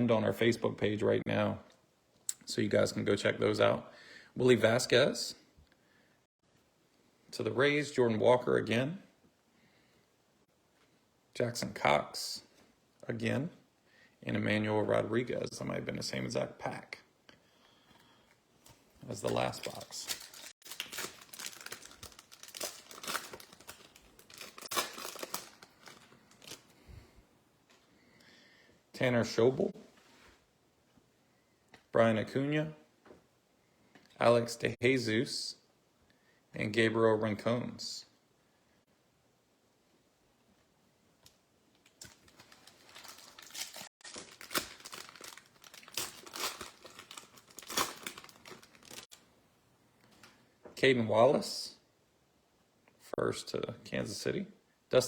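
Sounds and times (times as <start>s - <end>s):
wrapper crinkling and tearing: 19.0s - 26.7s, 41.8s - 49.2s.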